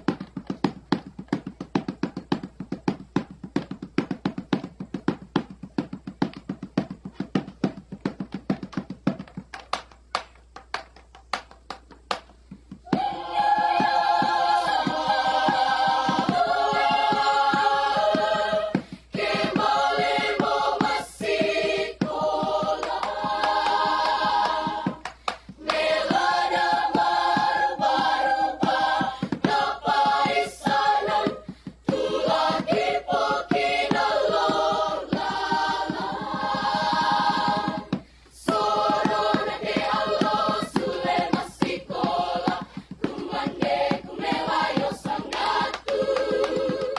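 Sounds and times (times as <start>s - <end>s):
choir singing in harmony: 12.8s - 25.0s, 25.6s - 46.9s.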